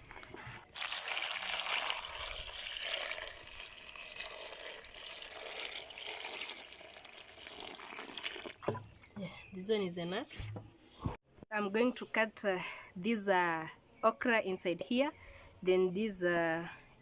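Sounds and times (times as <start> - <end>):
water pouring into a basin: 0.7 - 8.7.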